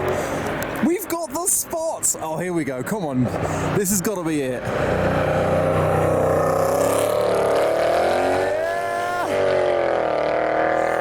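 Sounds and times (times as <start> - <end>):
car engine revving: 4.6 - 11.0.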